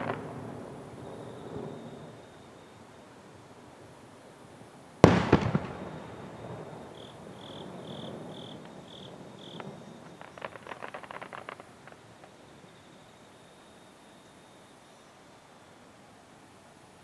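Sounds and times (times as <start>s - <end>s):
firework bursting with sharp bang: 0.0s - 2.0s, 5.0s - 12.1s
quick cracks with rumbling echo: 5.1s - 7.6s
small crackling pops: 9.5s - 12.4s.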